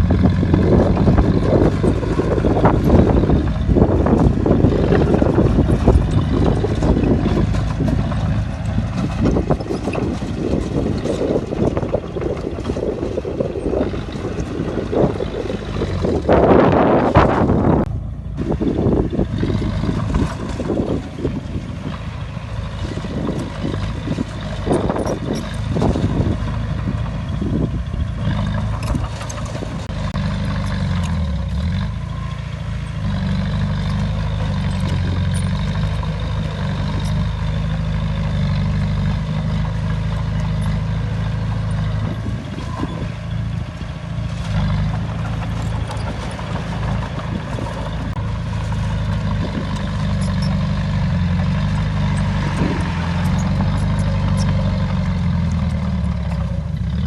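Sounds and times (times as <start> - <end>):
wind gusting on microphone: 0.0 - 30.2, 38.6 - 50.2
heavy diesel engine running: 0.0 - 57.0.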